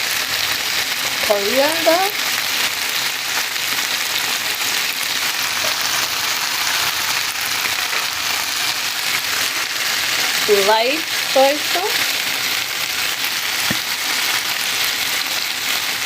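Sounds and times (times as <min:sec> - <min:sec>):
vegetables sizzling in hot oil: 0:00.0 - 0:16.0.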